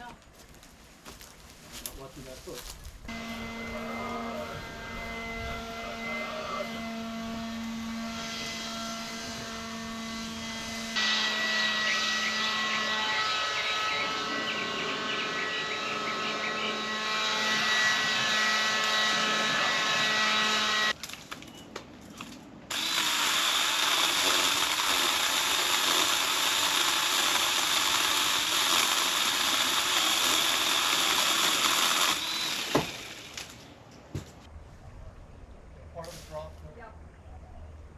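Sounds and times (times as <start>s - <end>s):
power tool motor whine: 3.1s - 21.0s, 22.7s - 33.6s.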